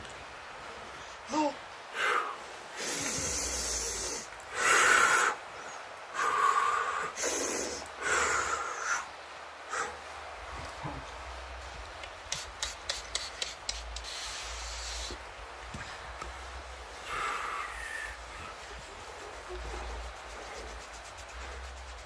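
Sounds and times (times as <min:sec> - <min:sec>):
person breathing loudly: 0:00.9 - 0:10.1, 0:14.0 - 0:22.0.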